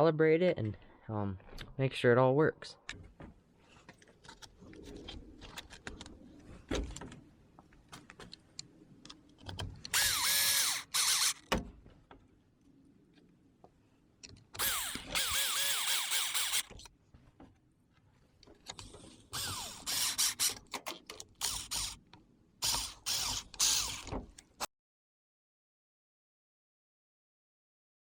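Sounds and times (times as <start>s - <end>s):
electric motor whine: 14.6s - 16.7s.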